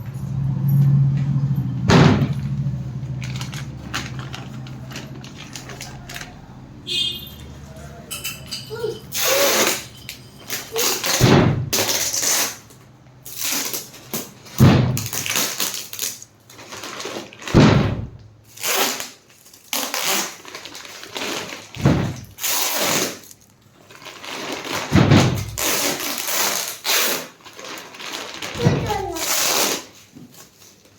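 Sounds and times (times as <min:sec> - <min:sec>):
dull thump: 0:01.9 - 0:02.6, 0:11.2 - 0:11.8, 0:14.6 - 0:15.1, 0:17.6 - 0:18.2, 0:21.8 - 0:22.3, 0:24.9 - 0:25.6
packaging rustling: 0:02.7 - 0:06.6, 0:13.2 - 0:17.6, 0:18.5 - 0:30.9.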